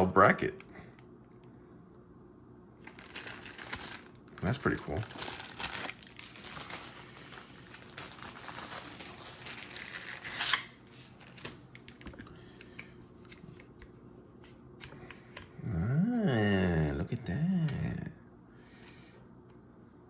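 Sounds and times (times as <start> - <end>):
plastic packaging rustling: 2.8 - 12.6.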